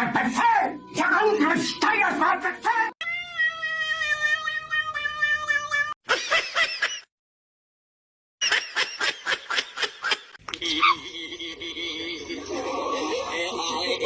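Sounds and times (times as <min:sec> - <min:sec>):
cat meows: 0:03.0 - 0:06.0.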